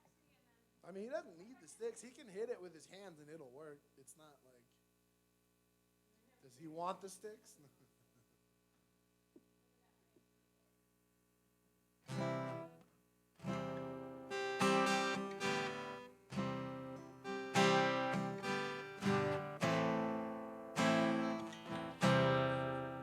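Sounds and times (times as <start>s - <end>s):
acoustic guitar strumming chords: 12.1s - 12.8s, 13.4s - 23.0s.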